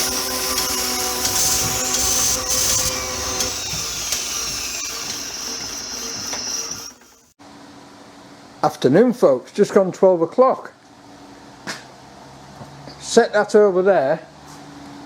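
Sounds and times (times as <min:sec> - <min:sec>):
electric tool whining: 0:00.0 - 0:07.4.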